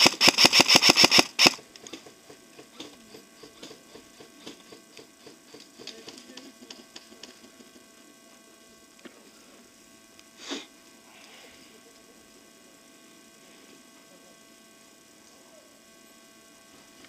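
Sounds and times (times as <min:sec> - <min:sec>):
airsoft gun shots: 0:00.0 - 0:01.6
faint clicks and ticks: 0:00.0 - 0:09.2.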